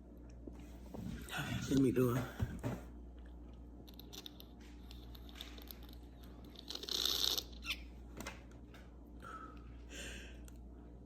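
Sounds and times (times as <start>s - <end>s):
soft breath: 9.2s - 10.5s.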